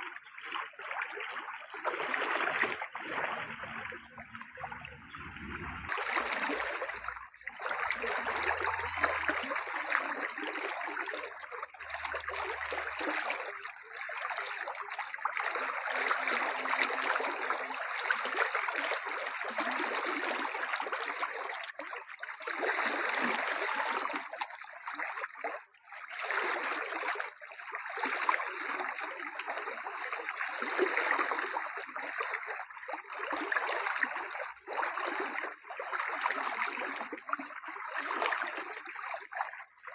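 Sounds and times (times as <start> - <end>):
running water splashing: 0.0 - 21.5.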